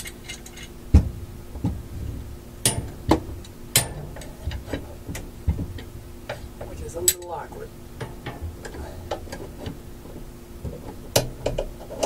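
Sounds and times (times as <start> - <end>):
heavy low thud: 0.9 - 6.0
clamp knocking and clicking: 10.6 - 12.0.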